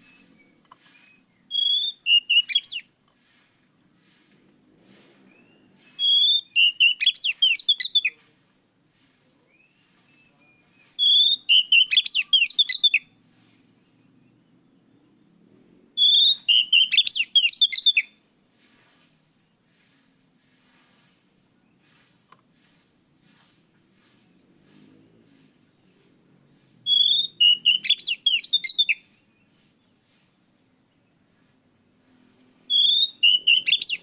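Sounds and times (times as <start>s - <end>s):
songbird singing: 0.0s - 3.4s, 5.3s - 18.2s, 24.0s - 34.0s.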